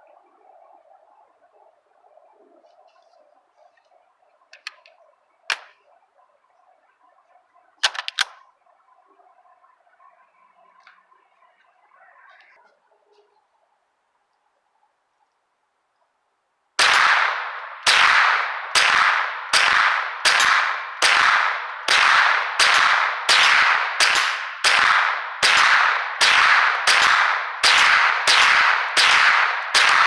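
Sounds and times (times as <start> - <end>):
single gunshots with echo: 16.8 - 30.0.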